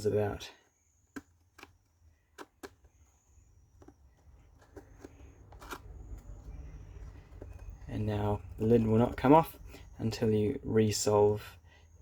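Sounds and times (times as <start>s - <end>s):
wooden tiles clicking and knocking: 1.0s - 7.9s.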